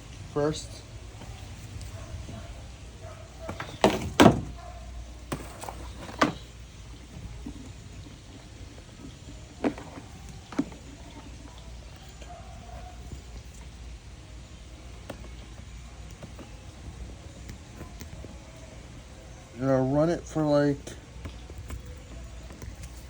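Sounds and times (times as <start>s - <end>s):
knocks and thumps of handling: 3.3s - 13.6s.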